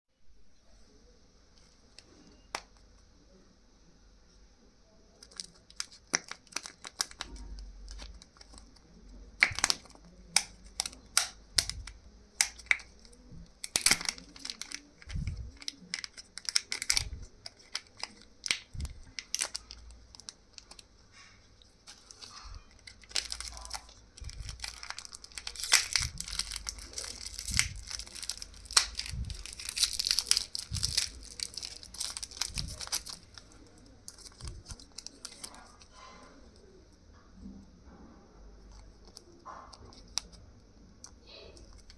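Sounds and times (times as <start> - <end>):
wrapper tearing and crinkling: 5.2 - 36.2, 41.6 - 41.9.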